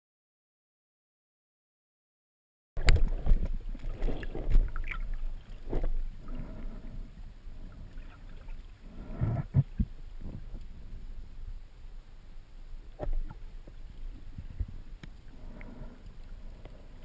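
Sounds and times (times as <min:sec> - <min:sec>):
water sloshing and splashing: 0:02.8 - 0:10.9.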